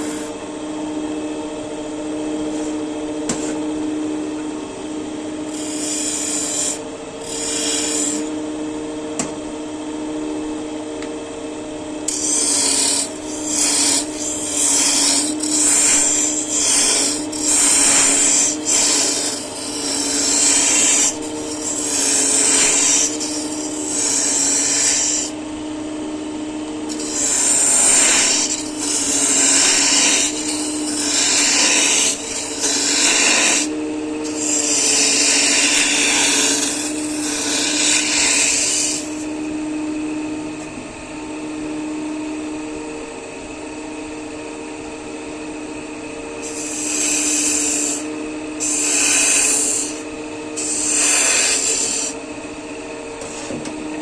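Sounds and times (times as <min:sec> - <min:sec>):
woodworking machine motor hum: 0:00.0 - 0:54.0
wood cutting rasps: 0:05.5 - 0:08.3, 0:12.1 - 0:25.4, 0:26.9 - 0:39.4, 0:46.4 - 0:50.0, 0:50.6 - 0:52.2.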